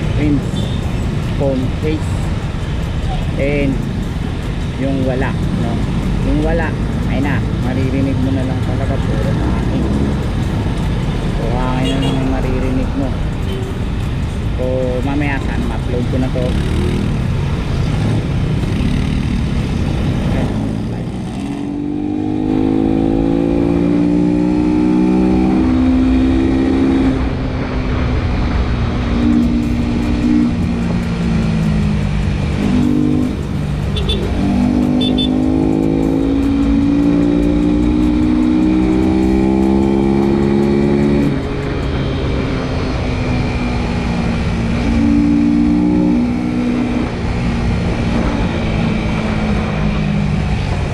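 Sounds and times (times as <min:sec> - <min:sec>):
low wind rumble: 0:12.3 - 0:34.7, 0:35.6 - 0:50.9
motorcycle engine accelerating: 0:16.4 - 0:27.3, 0:29.1 - 0:50.9.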